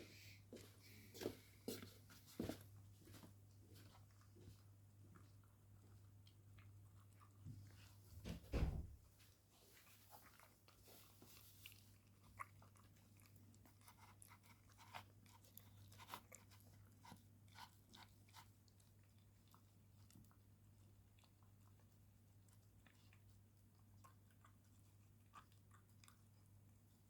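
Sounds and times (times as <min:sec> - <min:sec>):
dog chewing a treat: 0:09.9 - 0:27.0.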